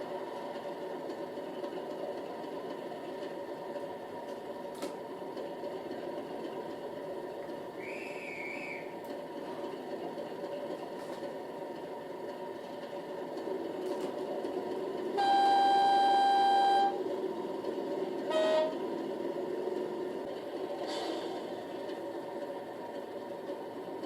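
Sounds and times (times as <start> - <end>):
locomotive horn: 15.1 - 17.0, 18.2 - 18.9.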